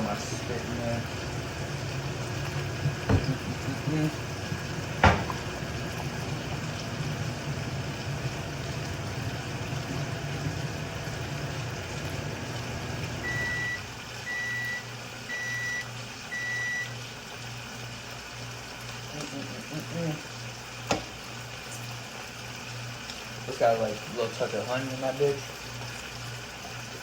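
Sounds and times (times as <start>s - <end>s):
steady low hum: 0.0s - 13.8s
appliance timer beeps: 0.5s - 17.1s
knock: 3.1s - 3.4s, 5.0s - 5.4s.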